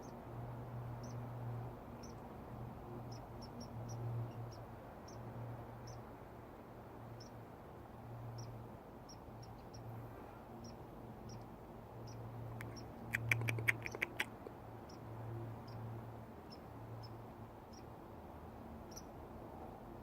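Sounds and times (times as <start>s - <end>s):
baby squirrel squeaking: 12.5s - 14.5s.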